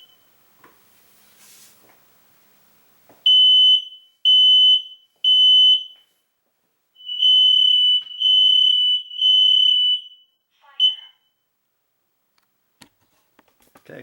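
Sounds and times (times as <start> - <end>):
smoke alarm high-pitched beeps: 3.3 - 6.1, 7.0 - 11.5.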